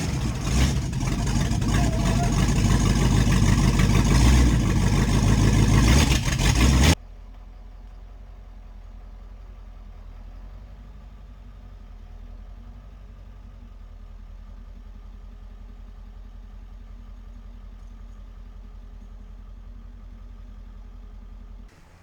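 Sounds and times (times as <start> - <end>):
engine running loudly: 0.0 - 7.0.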